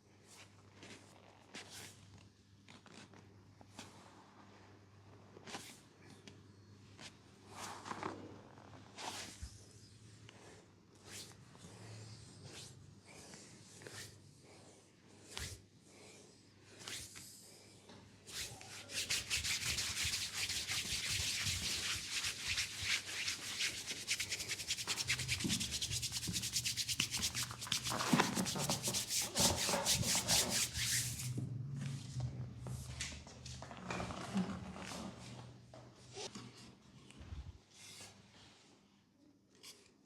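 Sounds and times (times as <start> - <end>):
hands rubbing hair and skin: 18.3 - 31.3.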